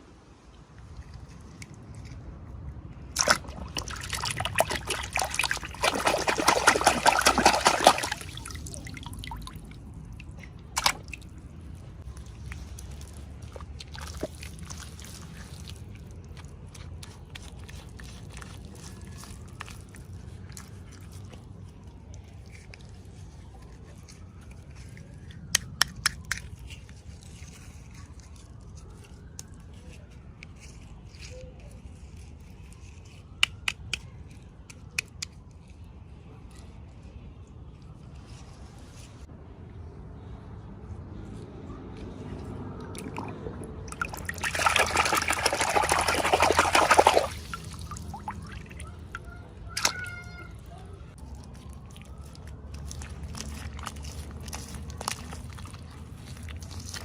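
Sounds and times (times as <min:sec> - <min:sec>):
packaging crinkling and tearing: 0:50.1 - 0:57.0.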